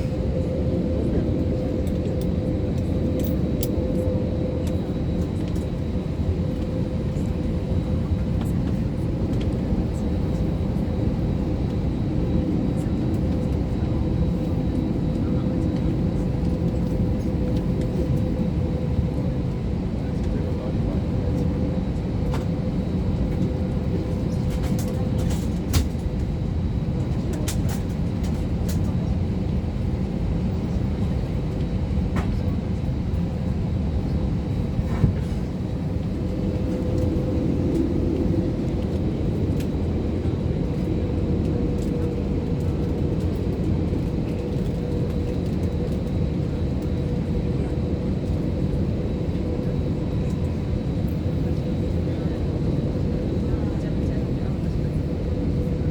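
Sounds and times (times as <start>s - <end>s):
aircraft cabin drone: 0.0s - 55.9s.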